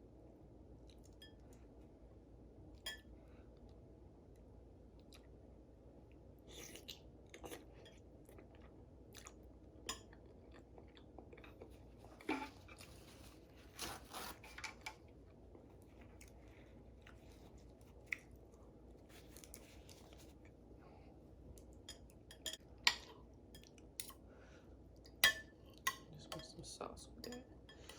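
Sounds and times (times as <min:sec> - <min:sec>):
person chewing noodles: 0:04.9 - 0:05.4, 0:06.4 - 0:12.9.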